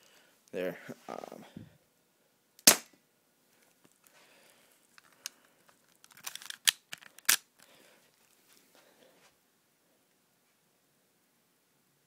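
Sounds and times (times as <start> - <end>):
airsoft pistol snap: 2.6 - 3.0.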